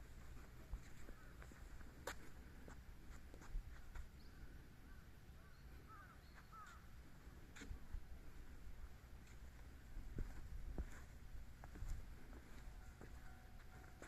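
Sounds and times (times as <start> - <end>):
faint short bird calls: 3.8 - 6.9.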